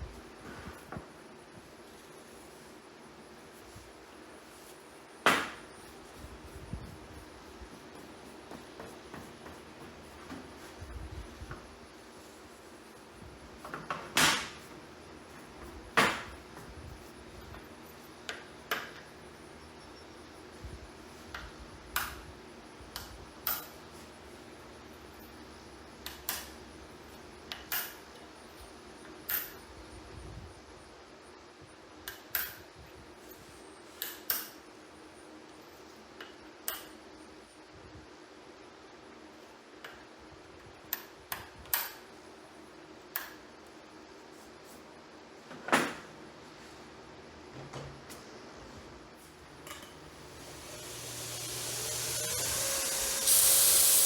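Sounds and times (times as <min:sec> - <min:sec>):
faint steady hum: 0:00.0 - 0:54.0
faint hum: 0:46.2 - 0:54.0.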